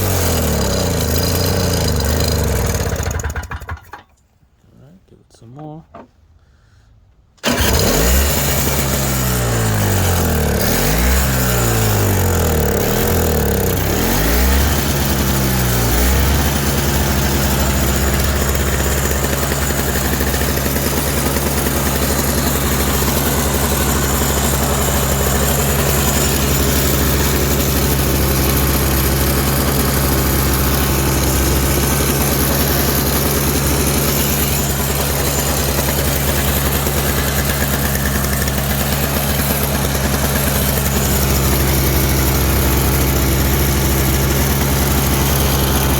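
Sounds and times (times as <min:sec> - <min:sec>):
snowblower engine starting and running: 0:00.0 - 0:04.2, 0:07.4 - 0:45.9.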